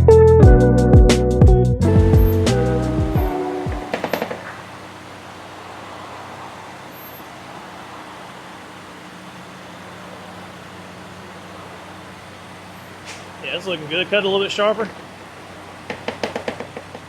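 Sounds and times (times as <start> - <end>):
vehicle engine idling: 1.4 - 17.0
outdoor noise: 1.8 - 17.0.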